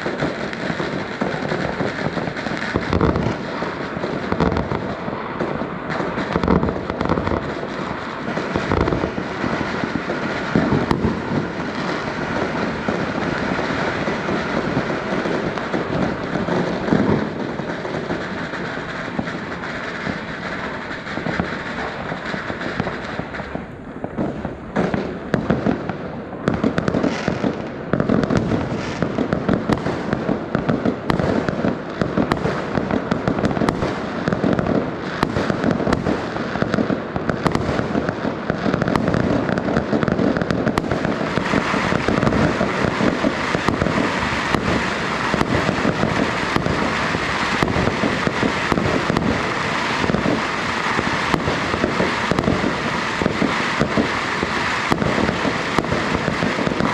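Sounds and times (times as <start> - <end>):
fireworks and firecrackers banging: 0.0 - 56.9.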